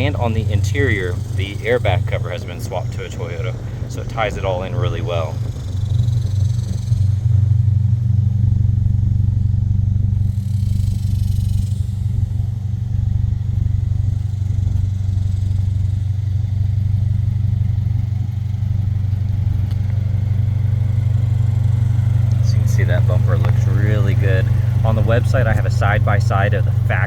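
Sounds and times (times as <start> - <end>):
car engine idling: 0.0 - 27.0.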